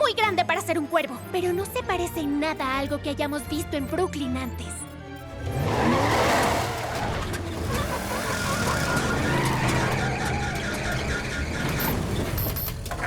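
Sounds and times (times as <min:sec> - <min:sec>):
cartoon car engine: 0:05.3 - 0:13.0.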